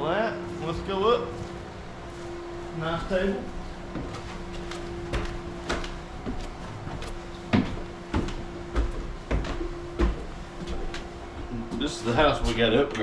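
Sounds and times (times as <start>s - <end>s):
low hum: 0.0s - 13.0s
footsteps thudding: 3.4s - 11.9s.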